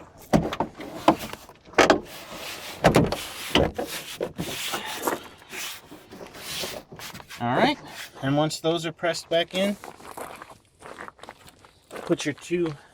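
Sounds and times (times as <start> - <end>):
plastic panel scraping door: 0.0 - 8.2.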